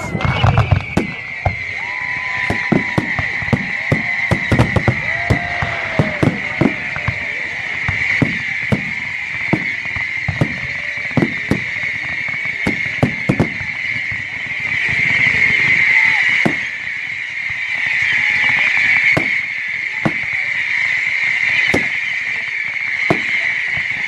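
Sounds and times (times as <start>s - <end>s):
fireworks bangs and pops: 0.0s - 24.0s.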